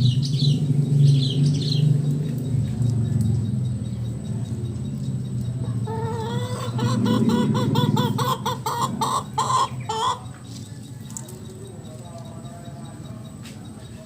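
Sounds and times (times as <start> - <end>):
rooster clucking rapidly: 5.7 - 10.3.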